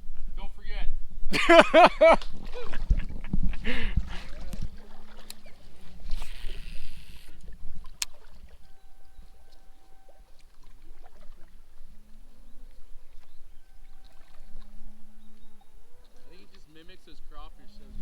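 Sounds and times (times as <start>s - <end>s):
water around a boat: 1.2s - 18.0s
water splash: 1.4s - 8.7s, 10.4s - 11.8s.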